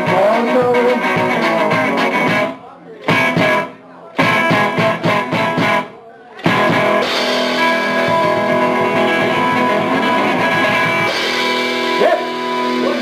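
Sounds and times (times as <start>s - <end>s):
guitar slide: 6.4s - 13.0s
electric guitar chord ringing: 6.7s - 13.0s.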